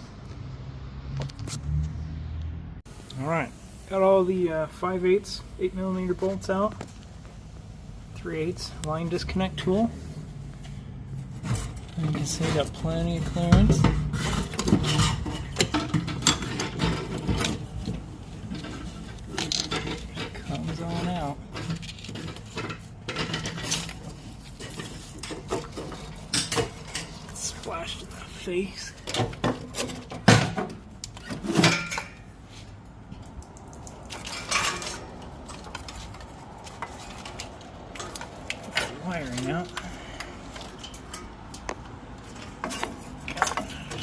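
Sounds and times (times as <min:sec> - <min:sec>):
metal scraping and rubbing: 0:10.0 - 0:30.3.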